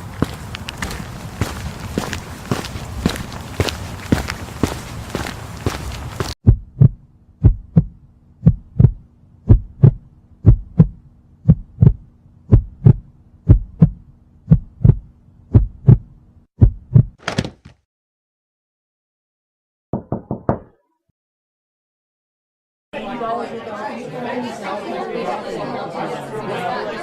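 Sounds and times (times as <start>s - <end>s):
heartbeat thumps: 6.4s - 17.2s.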